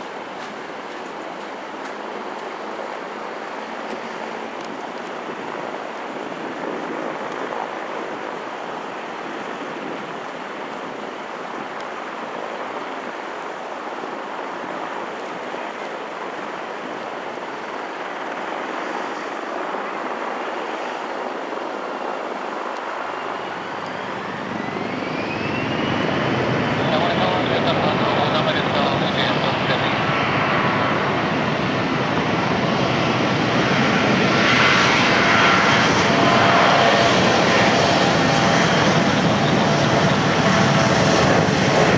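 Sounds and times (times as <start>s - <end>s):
distant jet engines roaring: 0.0s - 41.9s
turbine whine rising: 22.8s - 41.9s.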